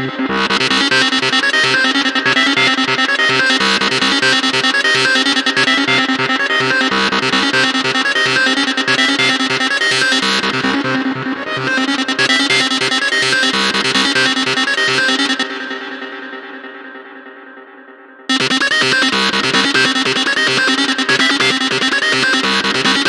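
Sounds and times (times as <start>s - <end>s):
pulsing synth bass line: 0.0s - 15.6s, 18.3s - 23.0s
trance synth lead line: 18.3s - 23.0s.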